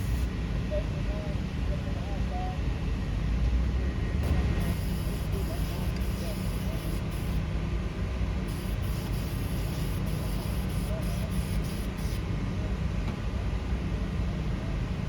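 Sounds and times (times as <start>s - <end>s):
machine humming: 4.2s - 7.5s, 8.4s - 12.2s.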